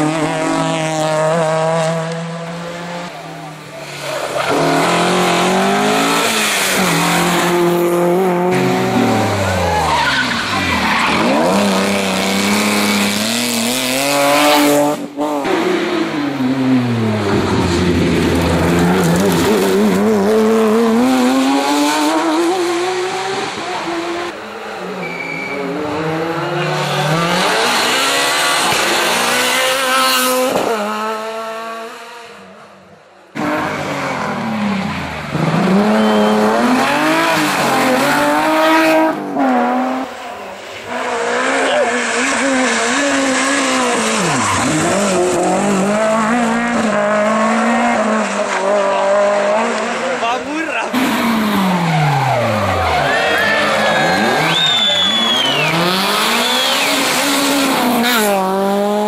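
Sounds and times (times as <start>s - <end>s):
rally car engines at full throttle: 0.0s - 59.0s
tyre squeal: 25.0s - 25.8s, 52.0s - 57.3s.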